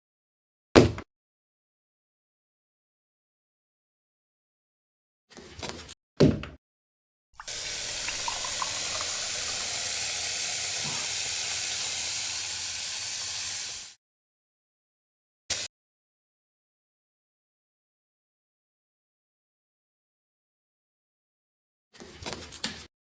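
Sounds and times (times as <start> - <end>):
steady hiss: 7.4 - 14.0.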